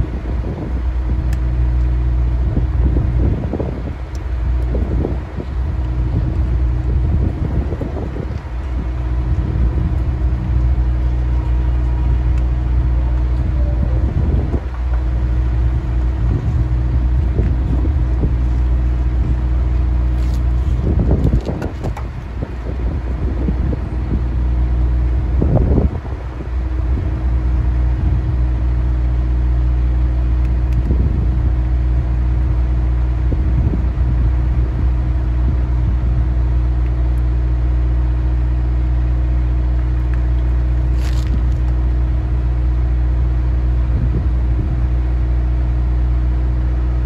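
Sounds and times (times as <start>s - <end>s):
low engine hum: 0.0s - 47.0s.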